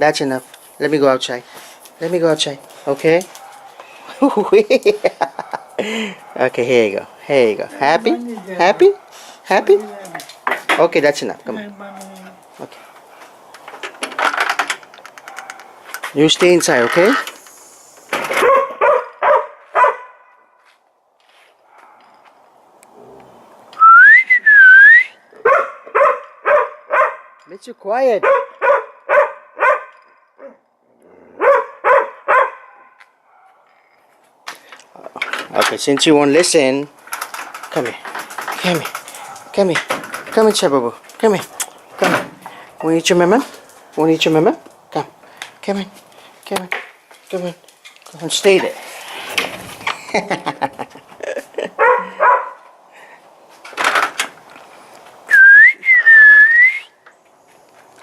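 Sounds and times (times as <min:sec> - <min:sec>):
dog barking: 0:03.4 - 0:03.8, 0:05.3 - 0:06.4, 0:08.4 - 0:09.2, 0:15.2 - 0:15.7, 0:18.3 - 0:20.4, 0:21.7 - 0:22.1, 0:25.4 - 0:27.4, 0:28.2 - 0:30.6, 0:31.4 - 0:33.7, 0:51.8 - 0:52.7
person whistling: 0:23.8 - 0:25.2, 0:55.3 - 0:56.9.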